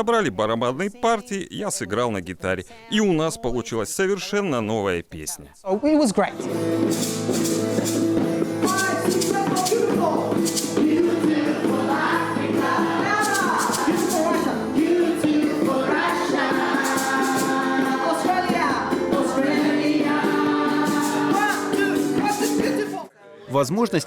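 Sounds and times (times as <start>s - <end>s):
hand percussion: 6.4s - 23.1s
children singing in unison: 10.4s - 22.2s.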